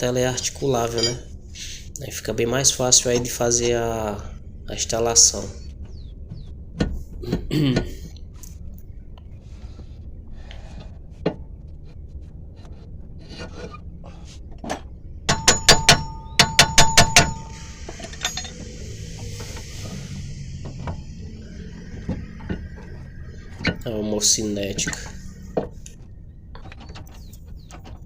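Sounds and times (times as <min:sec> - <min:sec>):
metal parts and tools knocking: 0:00.4 - 0:01.3, 0:14.6 - 0:18.7
sharp ringing metallic strikes: 0:15.3 - 0:18.8
soft hissing rustle: 0:17.6 - 0:22.3.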